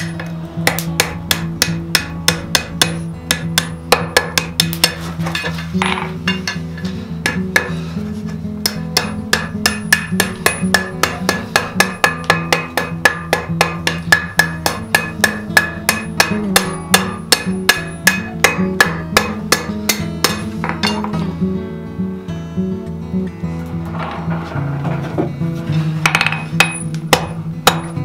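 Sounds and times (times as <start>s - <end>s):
hammer striking steel on anvil: 0.0s - 7.8s, 8.6s - 21.2s, 26.0s - 28.0s
guitar music: 0.0s - 28.0s.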